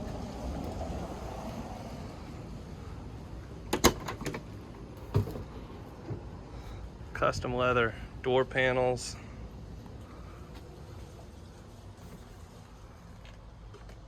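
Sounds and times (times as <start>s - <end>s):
truck door latch clicks: 3.7s - 4.4s.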